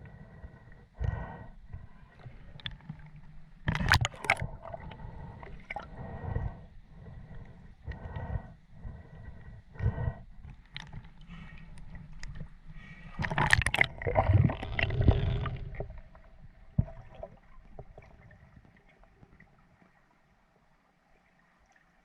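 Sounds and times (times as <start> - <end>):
water splashing and gurgling: 3.6 - 6.0, 10.8 - 19.9.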